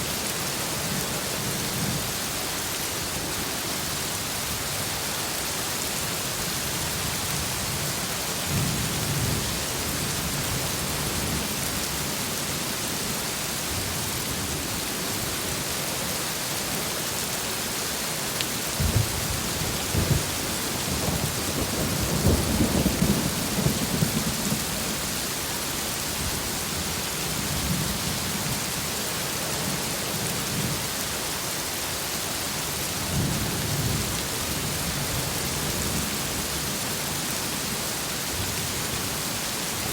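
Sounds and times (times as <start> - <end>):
heavy rain hissing: 0.0 - 39.9
thunder rumbling: 18.8 - 24.8.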